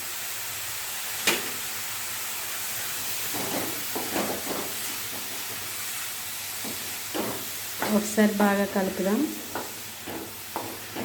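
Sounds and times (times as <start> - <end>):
vegetables sizzling in oil: 0.0 - 11.0
scraping in a pan: 3.1 - 5.5.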